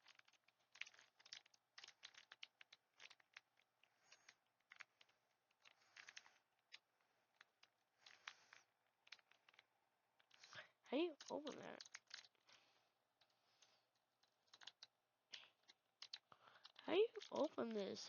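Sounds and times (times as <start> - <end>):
foil wrapper crackling: 0.0 - 4.8, 11.2 - 12.7, 14.3 - 17.8.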